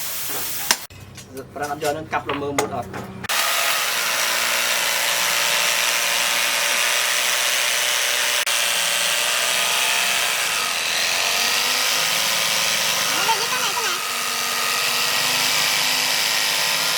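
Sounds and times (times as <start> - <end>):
grinder cutting steel: 3.3 - 16.9.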